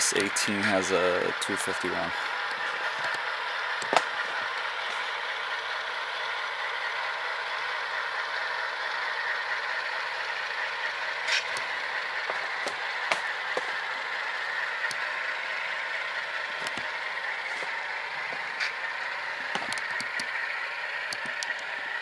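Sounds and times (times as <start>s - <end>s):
model diesel locomotive engine sound: 0.0s - 22.0s.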